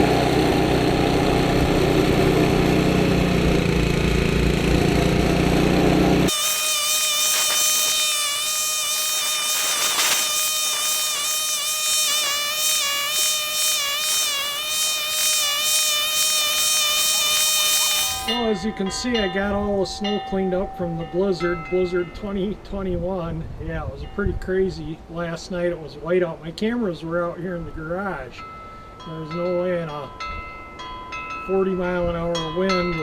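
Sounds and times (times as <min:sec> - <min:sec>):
snowblower engine running: 0:00.0 - 0:18.4.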